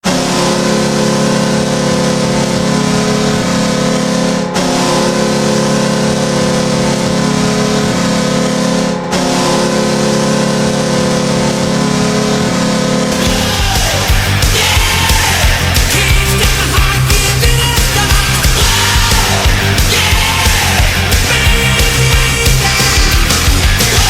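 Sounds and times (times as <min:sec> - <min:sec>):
goal horn blasts: 0:00.0 - 0:13.2.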